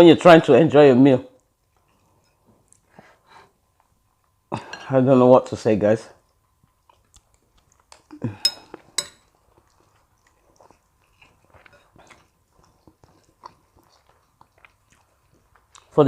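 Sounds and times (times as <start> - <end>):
faint chewing: 1.4 - 4.5, 6.1 - 16.0
spoon clinking against plate: 8.4 - 9.3.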